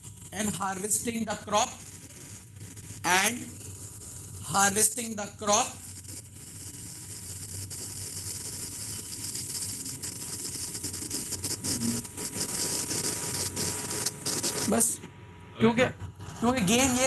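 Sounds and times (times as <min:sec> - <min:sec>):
pen scratching on paper: 0:00.0 - 0:15.0, 0:16.2 - 0:17.0.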